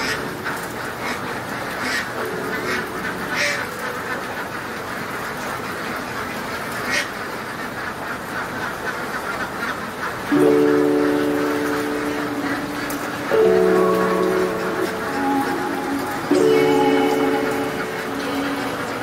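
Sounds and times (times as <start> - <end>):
flock of ducks quacking: 0.0 - 19.0.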